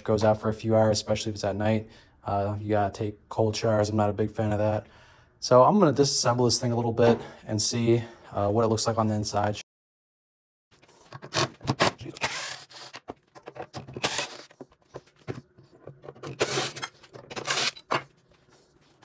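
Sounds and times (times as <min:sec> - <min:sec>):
tools scraping metal casing: 0:12.4 - 0:18.2.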